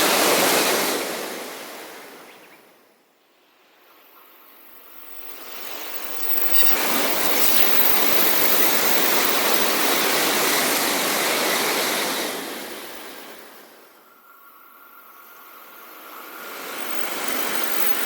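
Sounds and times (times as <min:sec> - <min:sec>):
high-speed train rushing past: 0:03.8 - 0:18.0.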